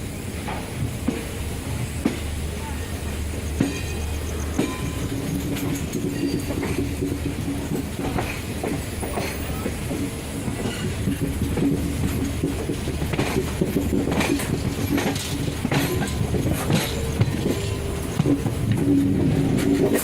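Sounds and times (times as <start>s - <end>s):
train rumbling: 0.0s - 20.0s
wheels clicking over rail joints: 0.4s - 20.0s.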